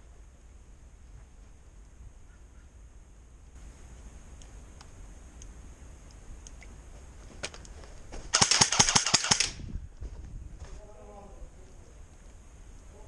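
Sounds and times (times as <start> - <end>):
faint clicks and handling noise: 3.9 - 8.0
airsoft rifle full-auto burst: 8.3 - 9.6.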